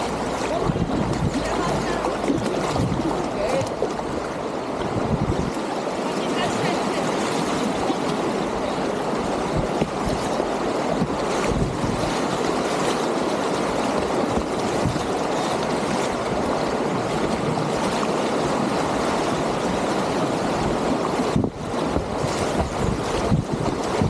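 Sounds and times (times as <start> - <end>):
whitewater rapids rushing: 0.0 - 24.0.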